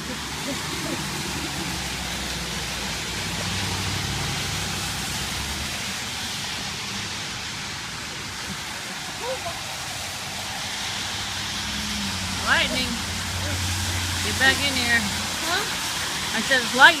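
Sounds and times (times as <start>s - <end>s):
heavy rain pouring: 0.0s - 17.0s.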